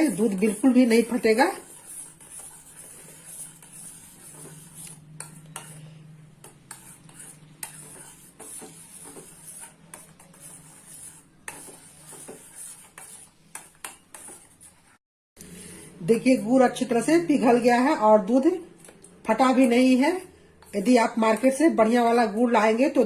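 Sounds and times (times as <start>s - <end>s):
spoon scraping and clinking pot: 0.0s - 14.7s.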